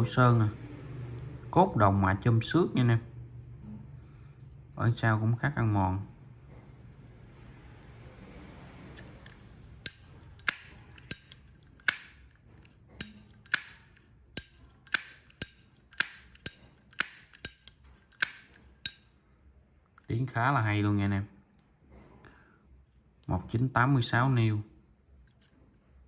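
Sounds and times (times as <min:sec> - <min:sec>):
lighter lid clicking open and shut: 0:09.9 - 0:12.2, 0:13.0 - 0:13.8, 0:14.4 - 0:19.0.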